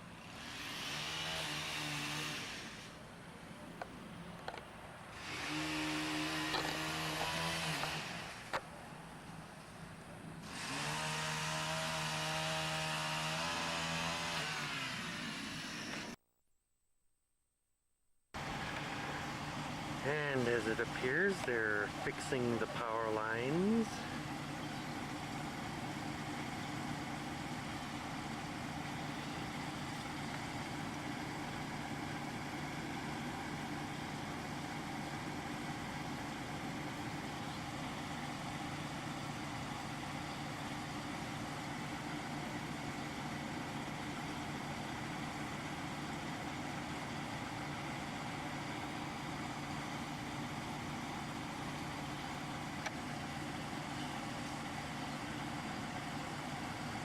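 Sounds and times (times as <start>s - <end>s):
engine idling: 0.0s - 16.2s, 18.4s - 57.0s.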